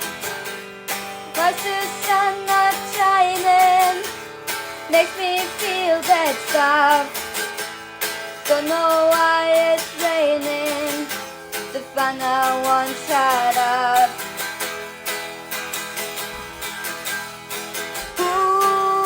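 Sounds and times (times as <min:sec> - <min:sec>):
acoustic guitar strumming: 0:00.0 - 0:19.0
person singing wordless melody: 0:01.3 - 0:04.1, 0:04.9 - 0:07.2, 0:08.4 - 0:14.3, 0:18.1 - 0:19.0.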